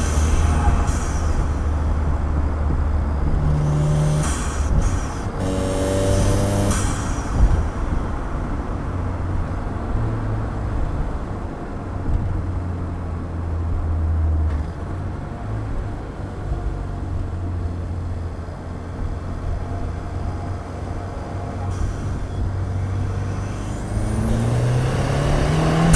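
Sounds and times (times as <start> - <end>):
sharp thump: 0.0 - 8.6, 23.0 - 25.9
car engine deep drone: 0.0 - 25.9.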